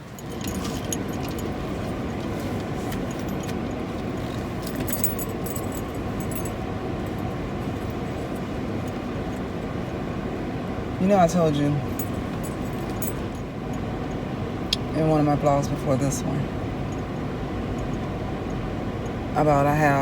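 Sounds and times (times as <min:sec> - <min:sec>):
metallic jingling: 0:00.0 - 0:09.4, 0:11.8 - 0:13.9.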